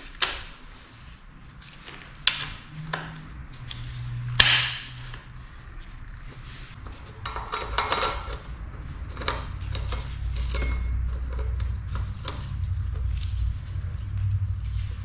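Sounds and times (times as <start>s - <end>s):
steady low hum: 0.0s - 15.0s
metal clinking and rattling: 6.8s - 13.2s.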